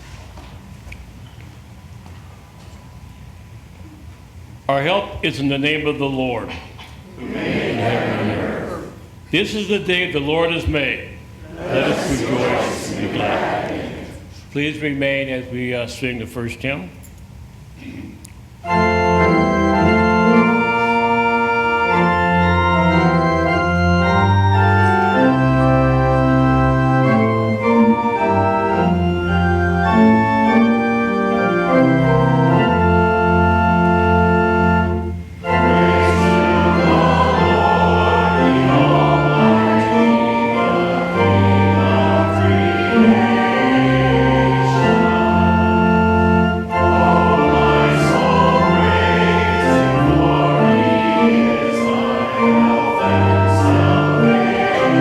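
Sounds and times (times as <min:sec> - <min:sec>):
congregation singing a hymn: 0:07.2 - 0:10.8, 0:11.4 - 0:14.3, 0:18.6 - 0:55.0
church organ chords: 0:18.6 - 0:55.0.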